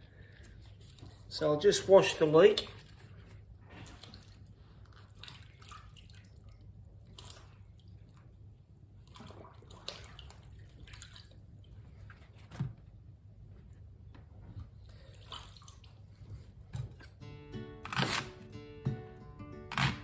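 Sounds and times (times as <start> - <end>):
water splashing and dripping: 3.8 - 8.3, 9.0 - 12.5, 14.9 - 16.4.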